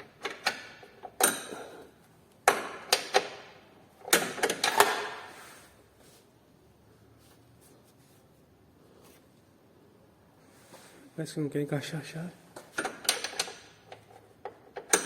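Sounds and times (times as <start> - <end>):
metal tools clanking on steel: 1.1 - 1.8.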